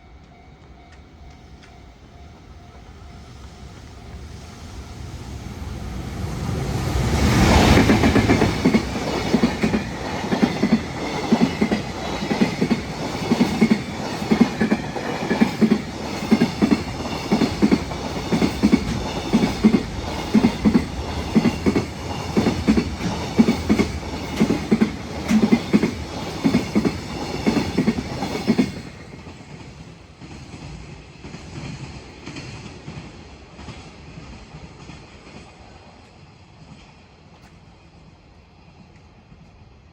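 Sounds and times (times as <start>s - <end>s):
electric locomotive passing: 0.0s - 39.9s
faint train rumbling: 0.0s - 39.9s
train wheels clacking over rail joints: 7.4s - 35.6s.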